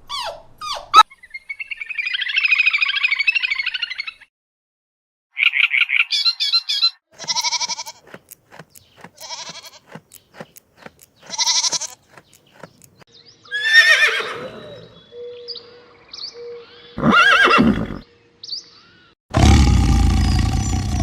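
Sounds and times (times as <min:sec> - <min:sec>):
goat bleating: 0:07.2 - 0:12.3
quick sharp clicks: 0:08.0 - 0:13.0.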